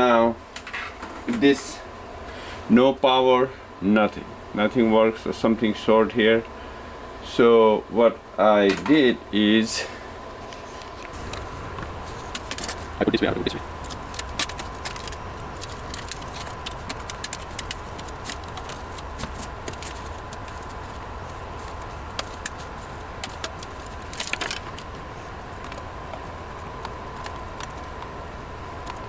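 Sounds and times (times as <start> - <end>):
faint hum: 0.0 - 29.0
computer hardware clicking and rattling: 11.2 - 29.0.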